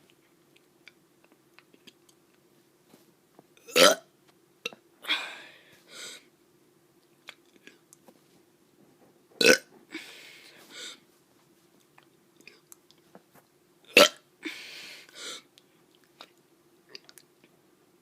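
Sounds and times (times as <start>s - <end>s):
child burping: 3.7s - 4.0s, 9.4s - 9.7s, 13.9s - 14.2s
soft breathy sound: 5.0s - 6.3s, 9.8s - 11.2s.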